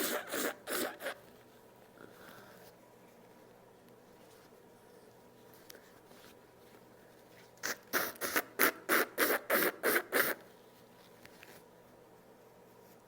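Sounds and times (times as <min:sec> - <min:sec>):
person blowing nose: 0:00.0 - 0:01.2, 0:07.6 - 0:10.5.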